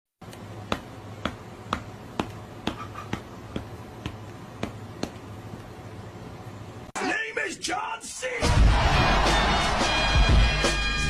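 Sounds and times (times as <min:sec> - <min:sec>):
steady low hum: 0:00.2 - 0:06.9.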